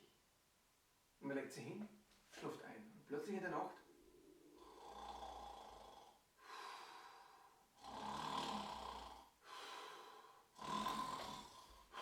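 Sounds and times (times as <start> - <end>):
man imitating snoring: 4.6 - 6.2, 7.8 - 9.4, 10.6 - 12.0.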